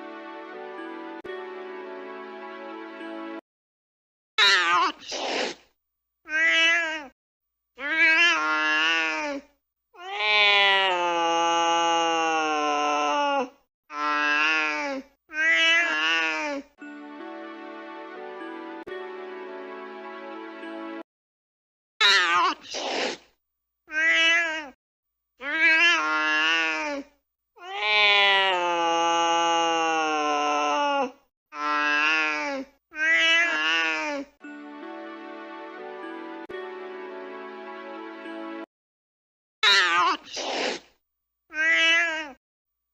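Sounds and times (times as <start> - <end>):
cat hissing: 4.9 - 5.7, 22.4 - 23.3, 40.1 - 40.9
angry cat yowling: 6.3 - 7.1, 10.0 - 11.3, 15.3 - 16.4, 23.9 - 24.8, 27.6 - 30.9, 33.0 - 33.9, 41.5 - 42.4
cat meowing: 6.3 - 7.1, 7.8 - 8.8, 15.3 - 16.2, 23.9 - 24.8, 25.4 - 26.7, 33.0 - 33.9, 41.5 - 42.4.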